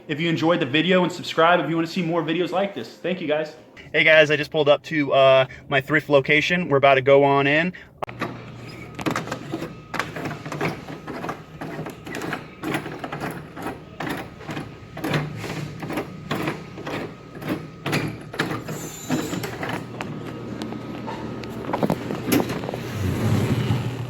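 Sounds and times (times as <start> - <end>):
footsteps walking: 19.9 - 22.9.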